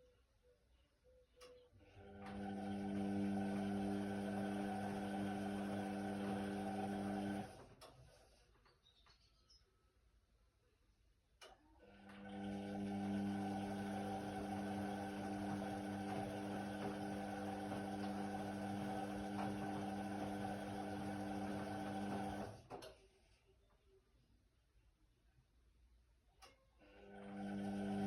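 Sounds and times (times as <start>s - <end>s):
washer motor humming: 1.8s - 7.9s, 12.0s - 22.8s, 27.1s - 28.0s
washer motor click: 13.6s - 22.9s.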